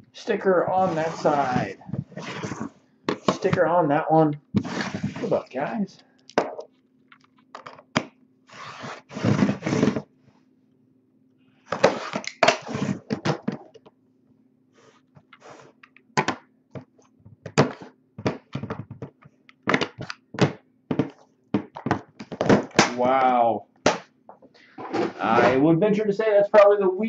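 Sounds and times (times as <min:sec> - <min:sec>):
packaging scraping and rustling: 0:00.8 - 0:03.5, 0:04.6 - 0:05.6, 0:08.5 - 0:10.0.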